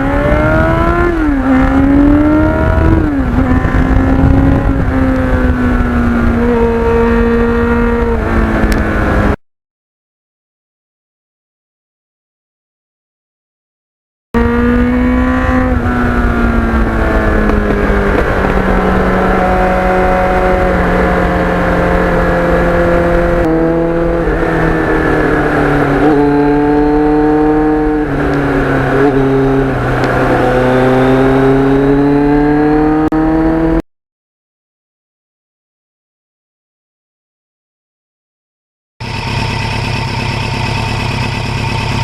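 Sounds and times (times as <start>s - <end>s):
motorcycle engine running: 0.0s - 9.4s, 14.4s - 33.8s, 39.0s - 42.0s
wind noise rumble: 0.0s - 9.4s, 14.4s - 33.8s.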